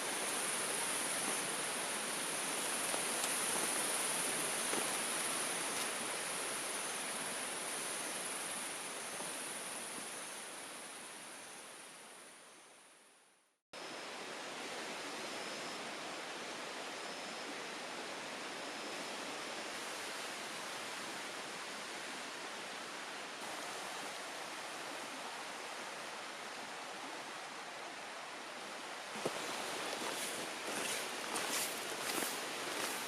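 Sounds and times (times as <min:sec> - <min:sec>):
stream rushing: 0:00.0 - 0:10.7, 0:19.7 - 0:33.0.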